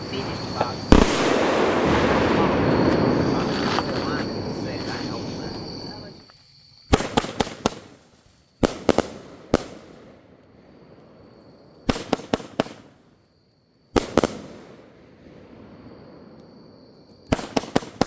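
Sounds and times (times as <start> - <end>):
firework cake bangs: 0.0 - 6.2, 6.9 - 13.1, 13.9 - 18.0
firework hiss: 0.0 - 6.3, 6.9 - 13.1.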